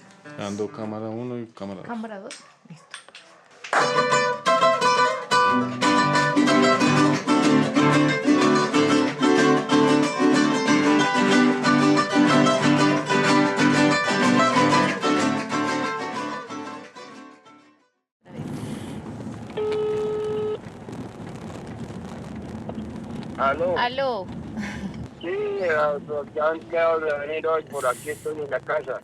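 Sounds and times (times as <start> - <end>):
acoustic string band playing: 3.8 - 17.4.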